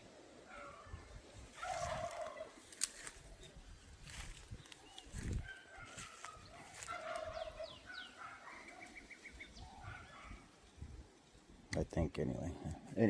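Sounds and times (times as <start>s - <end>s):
faint poultry calls: 0.5s - 3.4s, 4.9s - 10.6s.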